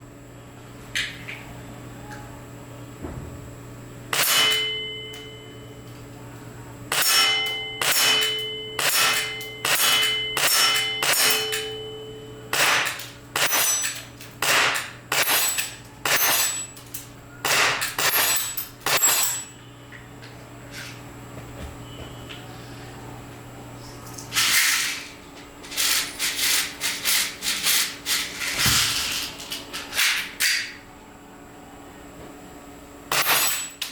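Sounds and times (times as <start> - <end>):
ringing metal clang: 4.2 - 5.7, 6.9 - 14.1, 15.1 - 19.6
airsoft pistol shots: 8.8 - 11.5, 12.5 - 13.7, 14.4 - 16.4, 17.4 - 19.3, 33.1 - 33.6.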